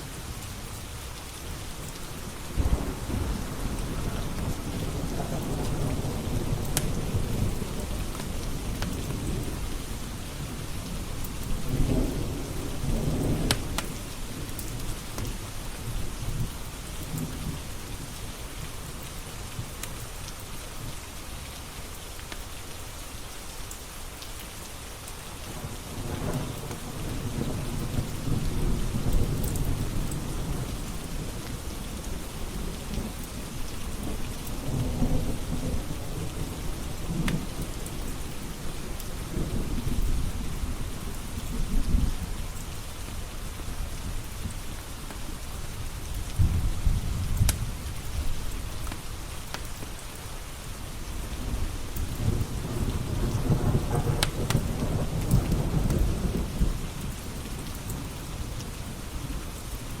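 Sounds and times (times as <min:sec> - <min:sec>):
steady rain: 0:00.0 - 1:00.0
low rolls of thunder: 0:02.2 - 0:16.5, 0:25.5 - 0:42.6, 0:46.2 - 0:49.0, 0:51.1 - 1:00.0.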